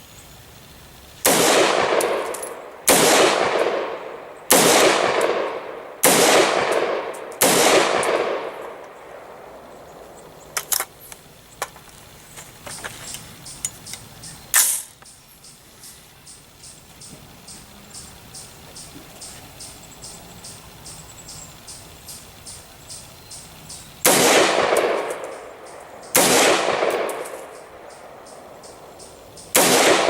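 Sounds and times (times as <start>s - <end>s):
gunshots with rolling echo: 1.2s - 10.5s, 24.0s - 30.0s.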